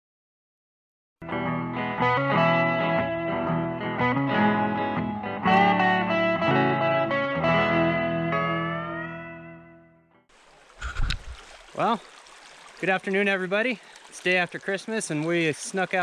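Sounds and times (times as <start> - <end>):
guitar playing: 1.2 - 10.2.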